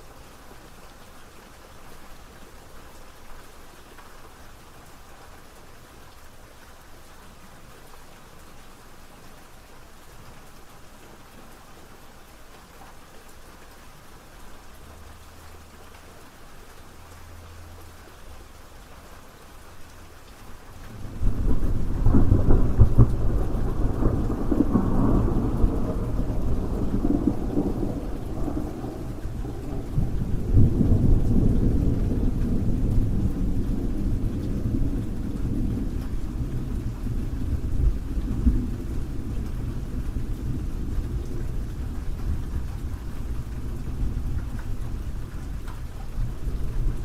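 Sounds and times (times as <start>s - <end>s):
steady rain: 0.0s - 47.0s
rolling thunder: 20.9s - 47.0s.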